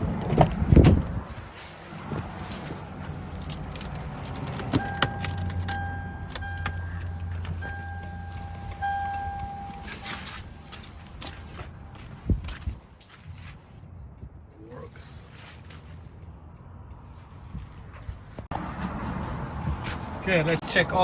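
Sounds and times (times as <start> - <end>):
keys jangling: 2.5 - 10.9
electronic chime-like tone: 4.9 - 10.2.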